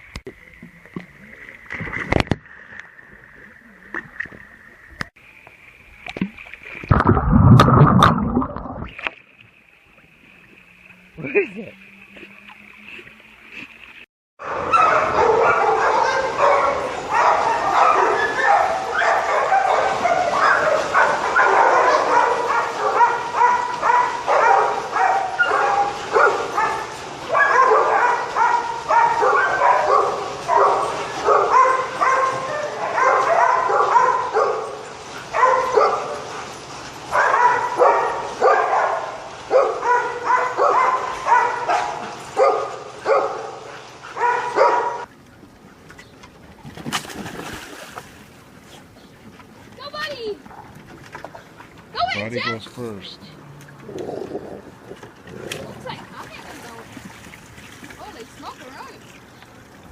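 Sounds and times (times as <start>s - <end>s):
dog barking and yipping: 14.4s - 34.7s, 35.3s - 36.2s, 37.1s - 45.1s.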